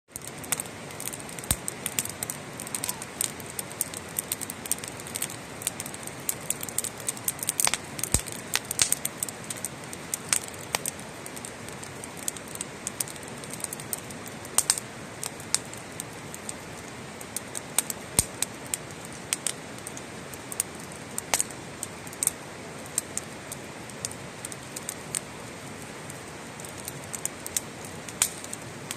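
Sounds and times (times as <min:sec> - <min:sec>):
campfire crackling and popping: 0:00.1 - 0:28.9
fire hiss: 0:00.1 - 0:28.9.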